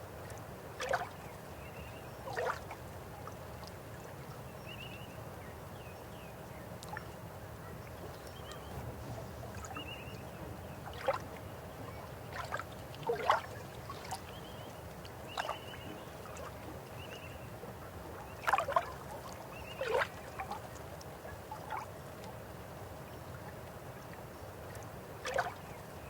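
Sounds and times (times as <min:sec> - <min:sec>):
river water running: 0:00.0 - 0:26.0
water gurgles and splashes: 0:00.8 - 0:01.2, 0:02.3 - 0:02.8, 0:10.6 - 0:16.7, 0:18.4 - 0:20.8, 0:25.2 - 0:26.0.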